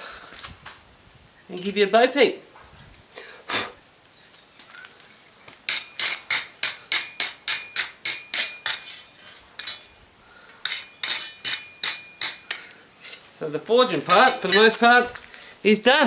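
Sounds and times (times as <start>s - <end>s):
metal scraping on steel: 5.7s - 15.0s.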